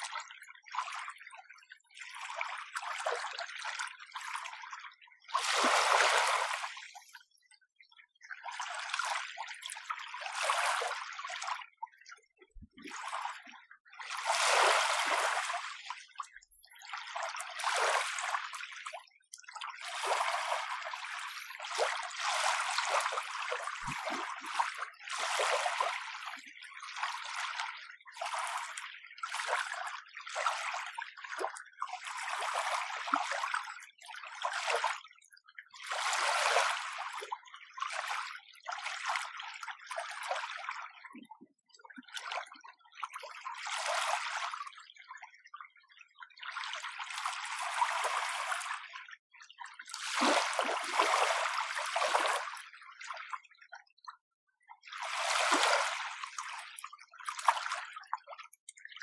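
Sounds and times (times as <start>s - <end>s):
small waves lapping on shore: 5.4s - 7.0s, 14.1s - 15.7s, 50.0s - 52.5s, 55.1s - 56.6s.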